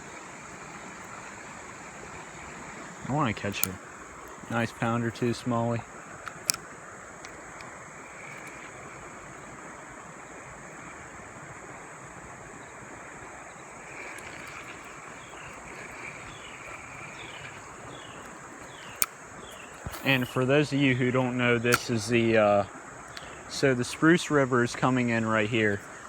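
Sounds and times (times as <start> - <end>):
sharp click: 0.0 - 9.4, 13.8 - 20.5, 21.6 - 22.4.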